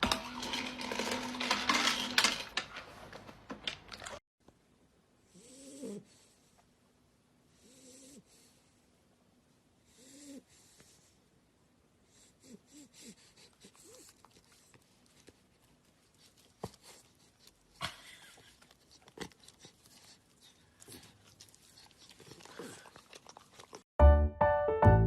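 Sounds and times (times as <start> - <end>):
dog chewing food: 13.7 - 23.9
piano background music: 24.0 - 25.0.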